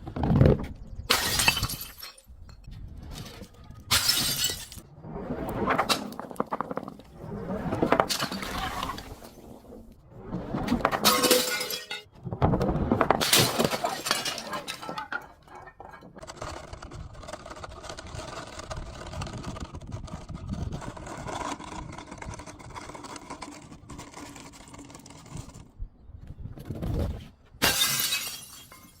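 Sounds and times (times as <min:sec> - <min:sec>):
glass bottles smashing: 0:01.1 - 0:02.4, 0:03.9 - 0:04.8, 0:11.0 - 0:12.1, 0:13.2 - 0:16.0, 0:27.6 - 0:29.0
glass crunching and clinking: 0:01.1 - 0:02.6, 0:03.9 - 0:04.8, 0:11.0 - 0:12.1, 0:13.2 - 0:16.2, 0:27.6 - 0:29.0.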